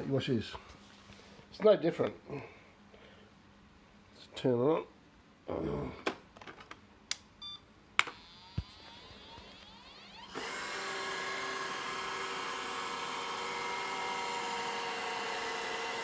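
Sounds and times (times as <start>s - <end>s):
clicks: 8.0s - 10.0s
robot vacuum motor whine: 8.1s - 16.0s.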